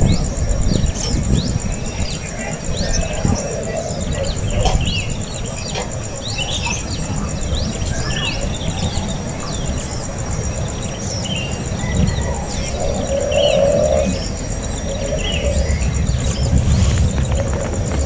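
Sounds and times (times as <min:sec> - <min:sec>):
birds chirping: 0:00.0 - 0:18.0
pulsing insect trill: 0:00.0 - 0:18.0
low rumble: 0:11.7 - 0:18.0.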